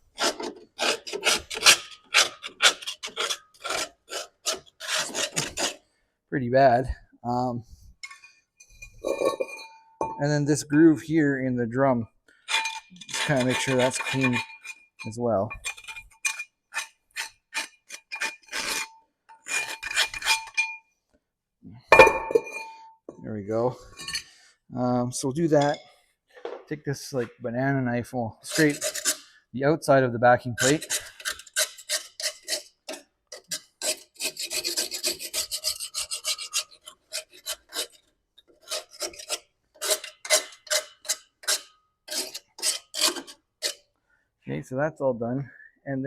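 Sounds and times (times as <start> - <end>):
tool scraping rust from metal drum: 0.1 - 5.8, 8.0 - 10.3, 12.4 - 20.8, 28.4 - 29.3, 30.5 - 43.9.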